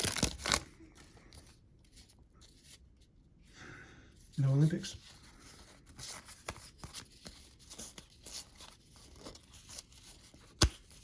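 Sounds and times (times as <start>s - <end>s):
wrapper crinkling: 0.0s - 0.8s
cardboard cards flicking and tapping: 6.1s - 11.0s.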